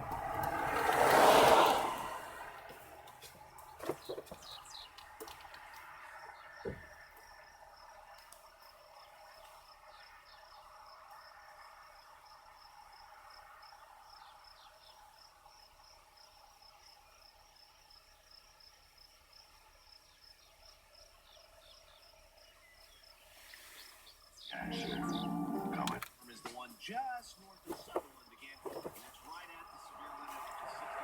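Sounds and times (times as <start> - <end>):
insect trill pulsing: 24.4 - 26.4.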